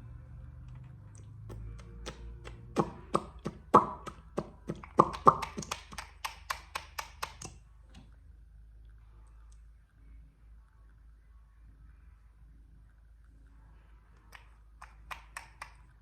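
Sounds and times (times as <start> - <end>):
quick sharp taps: 1.5 - 8.1.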